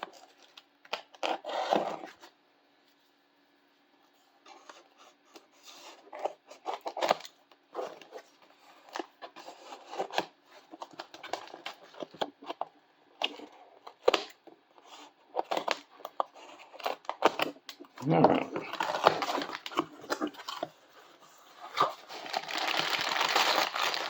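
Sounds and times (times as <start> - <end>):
packaging scraping and rustling: 4.5 - 12.6, 18.6 - 24.0.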